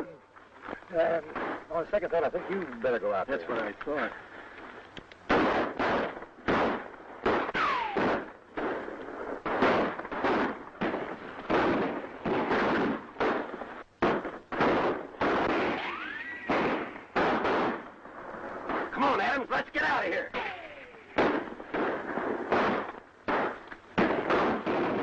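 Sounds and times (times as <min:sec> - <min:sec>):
echoing gunshots: 0:01.3 - 0:01.8, 0:05.3 - 0:25.0
ricochet whines: 0:05.3 - 0:08.8, 0:14.0 - 0:17.8, 0:20.3 - 0:25.0.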